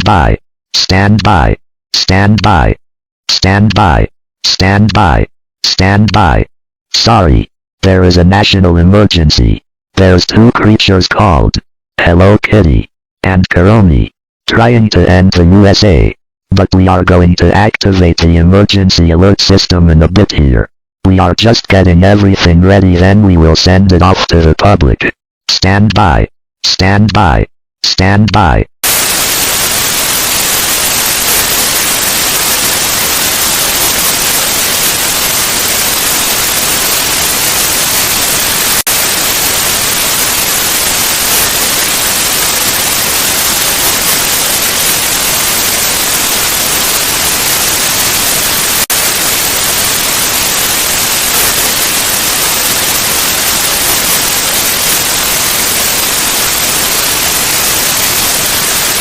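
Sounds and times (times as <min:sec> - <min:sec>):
static hiss: 0:28.8 - 0:59.0.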